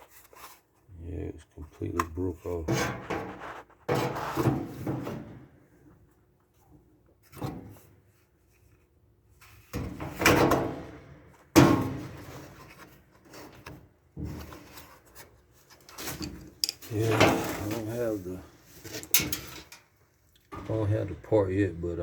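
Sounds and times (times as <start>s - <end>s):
metal parts clunking and scraping: 15.8s - 19.9s.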